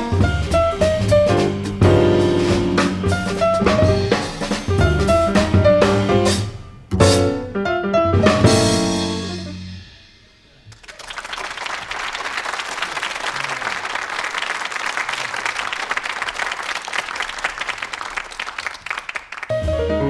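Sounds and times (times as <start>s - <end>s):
jazz piano and bass notes: 0.0s - 10.4s, 19.5s - 20.0s
audience applause: 10.7s - 19.5s.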